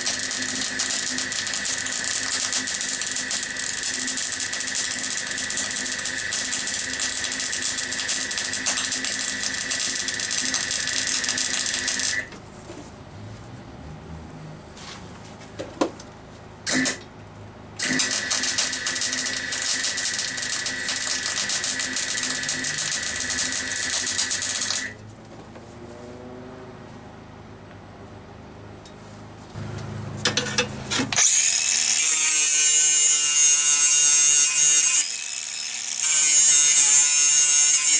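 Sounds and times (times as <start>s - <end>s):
crackling welding: 0.0s - 12.3s, 17.8s - 24.9s, 31.2s - 37.9s.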